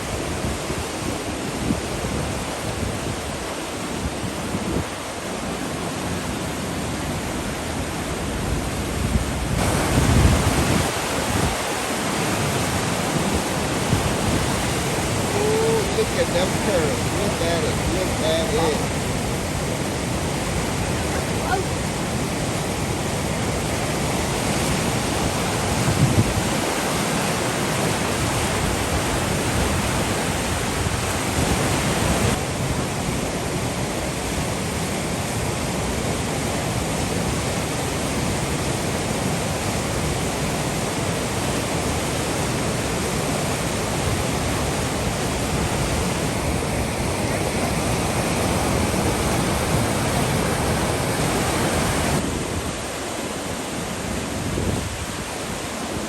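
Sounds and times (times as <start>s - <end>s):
river rapids rushing: 0.0s - 56.0s.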